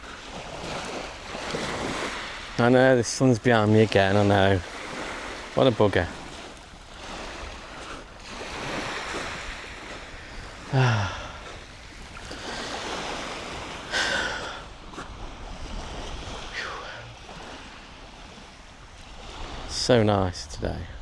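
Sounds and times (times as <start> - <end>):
sea waves washing onto beach: 0.0 - 21.0
person humming or sighing: 10.7 - 11.4.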